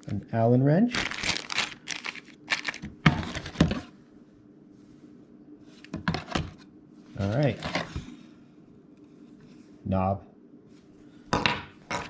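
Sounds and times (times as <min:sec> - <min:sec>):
plastic packaging crinkling: 0:00.9 - 0:03.6.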